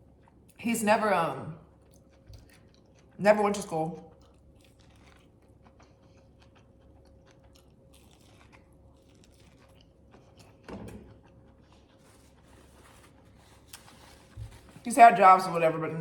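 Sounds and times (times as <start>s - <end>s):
faint steady hum: 0.0s - 16.0s
person chewing: 1.7s - 3.2s, 4.0s - 14.8s.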